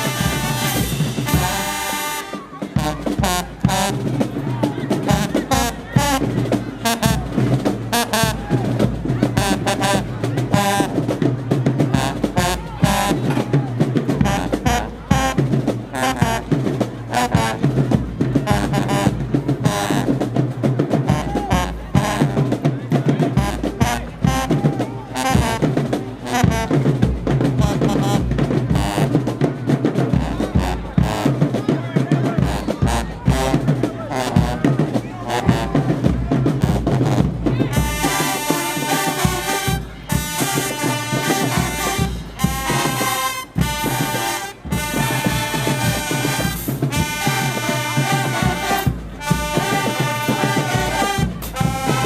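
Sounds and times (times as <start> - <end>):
bass drums and snare drums: 0.0 - 52.0
marching band brass: 0.0 - 52.0.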